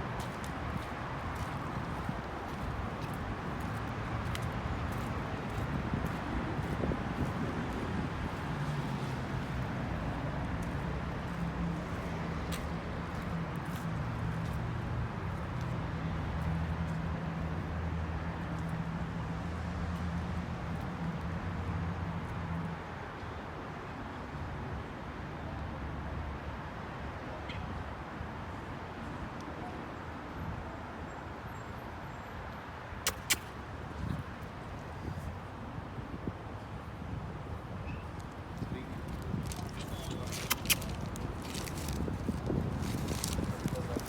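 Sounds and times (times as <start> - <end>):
street noise: 0.0 - 44.0.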